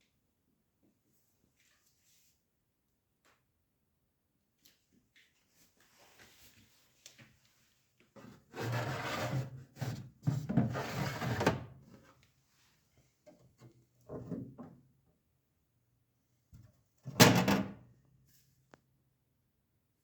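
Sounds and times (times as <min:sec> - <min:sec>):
refrigerator drawer scraping: 0:08.5 - 0:11.7.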